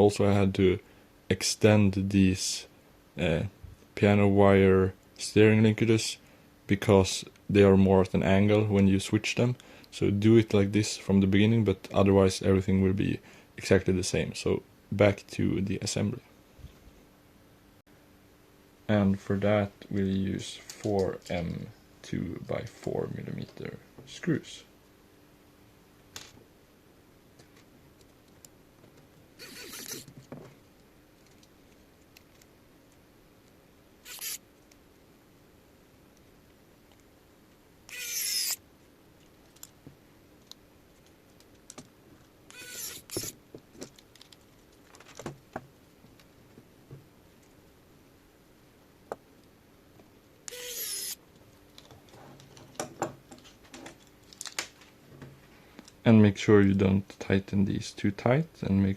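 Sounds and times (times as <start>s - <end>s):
faint ticks of small parts: 27.3s - 35.0s
electric screwdriver whirring: 29.4s - 30.0s, 34.1s - 34.4s, 37.9s - 38.6s, 42.5s - 43.4s, 50.5s - 51.2s.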